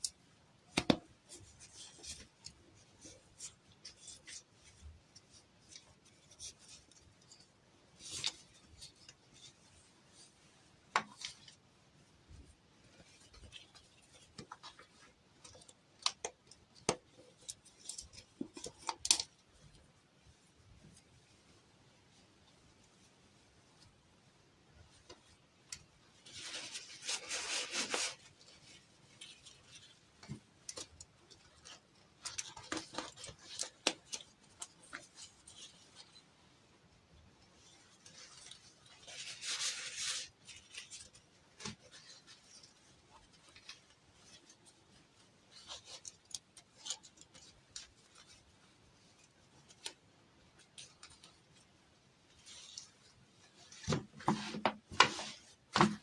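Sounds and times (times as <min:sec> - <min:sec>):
rustling scrapes of materials: 0:26.1 - 0:36.6, 0:37.4 - 0:56.0.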